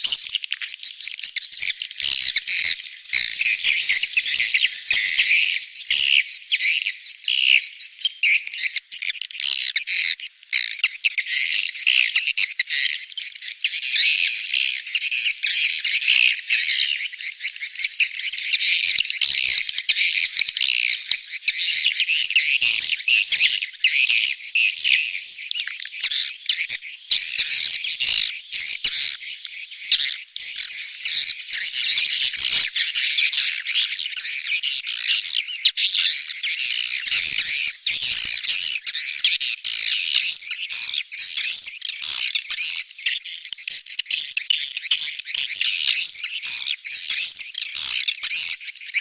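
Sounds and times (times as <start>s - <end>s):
swiftlets chattering and twittering: 1.2s - 6.3s, 18.0s - 40.9s.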